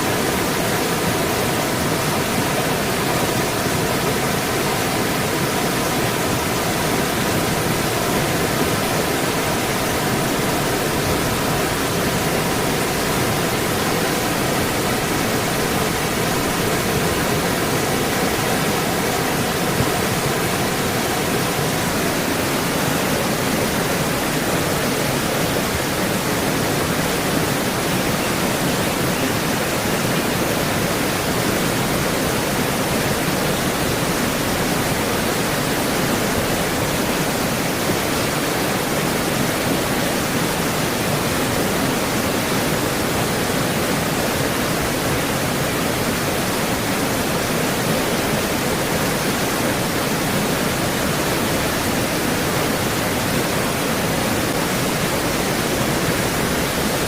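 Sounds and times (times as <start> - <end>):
creek water rushing: 0.0 - 57.0.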